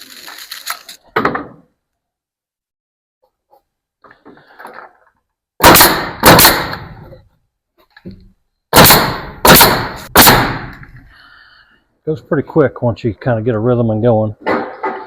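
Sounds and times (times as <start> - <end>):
nail gun firing into wood: 5.6 - 7.0, 8.7 - 10.8.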